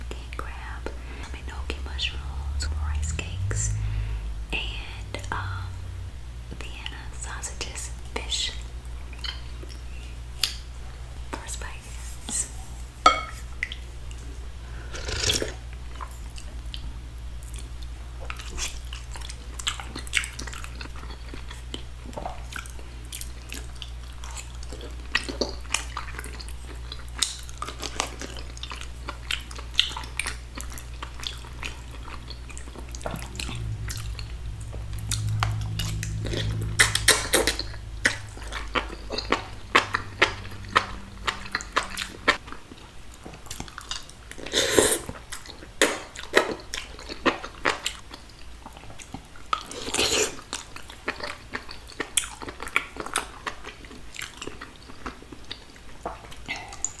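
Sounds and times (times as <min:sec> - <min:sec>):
low hum: 0:00.0 - 0:43.2
chewing and mouth smacking: 0:07.6 - 0:10.7, 0:14.9 - 0:57.0.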